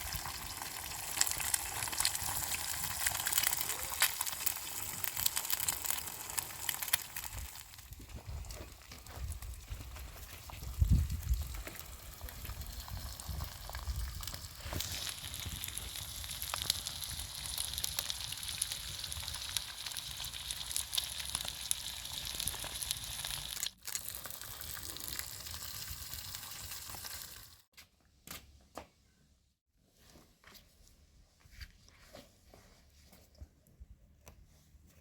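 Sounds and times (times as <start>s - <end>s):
food sizzling in a pan: 0.0s - 7.8s, 12.2s - 27.7s.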